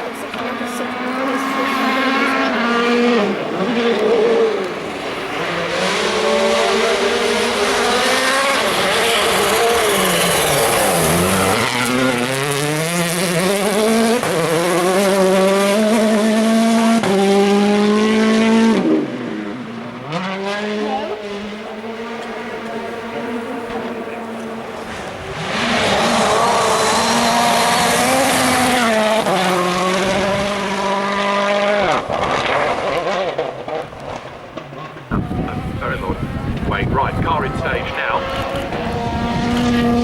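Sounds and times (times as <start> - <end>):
rally car engine accelerating: 0.0 - 40.0.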